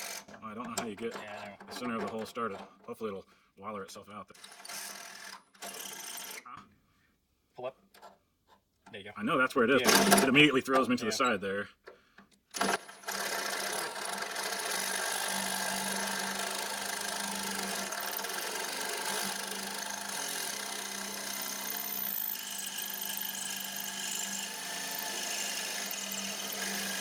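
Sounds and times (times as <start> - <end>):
electric drill boring metal: 0.0 - 0.3, 4.4 - 6.4, 12.6 - 27.0.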